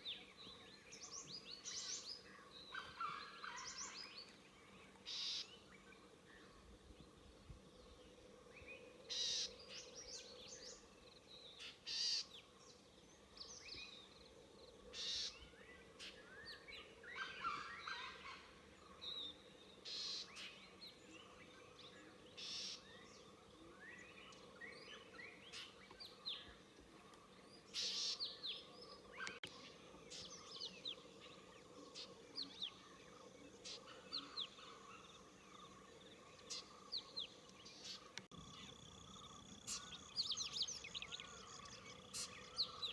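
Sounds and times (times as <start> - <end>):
birds chirping and singing: 0.0 - 42.9.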